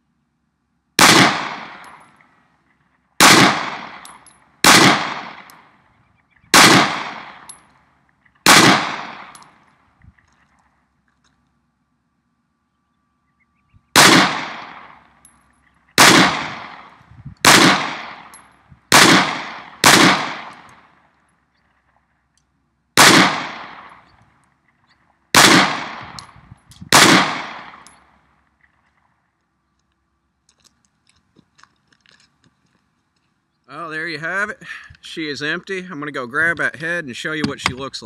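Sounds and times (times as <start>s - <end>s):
pistol shots with echo: 1.0s - 2.0s, 3.2s - 5.8s, 6.5s - 7.6s, 8.4s - 9.6s, 14.0s - 15.1s, 16.0s - 21.0s, 23.0s - 24.1s, 25.4s - 28.1s.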